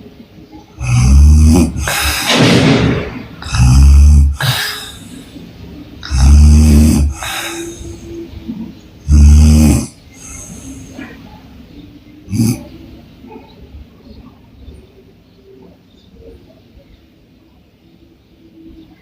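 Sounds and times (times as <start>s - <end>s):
woman snoring: 0.8s - 2.4s, 3.4s - 5.4s, 6.0s - 8.2s, 9.1s - 11.0s
soft breathy breath: 0.8s - 2.5s, 3.4s - 9.2s, 9.8s - 11.5s.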